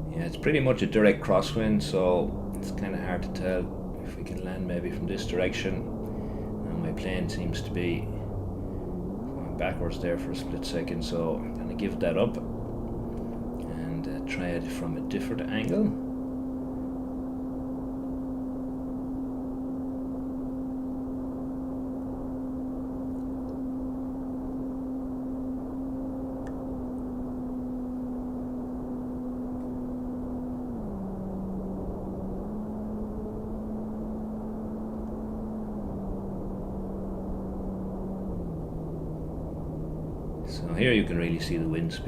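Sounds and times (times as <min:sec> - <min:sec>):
wind noise: 0:00.0 - 0:18.0
model plane motor humming: 0:00.0 - 0:42.0.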